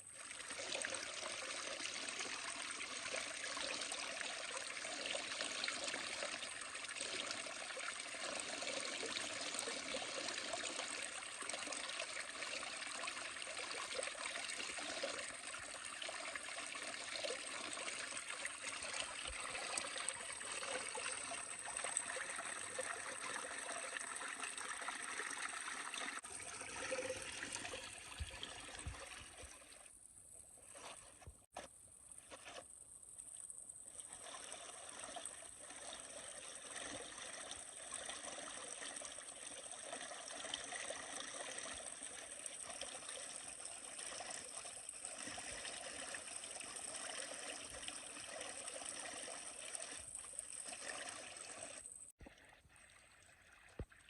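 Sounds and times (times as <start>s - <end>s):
spring water trickling: 0.0s - 29.9s, 33.9s - 54.0s.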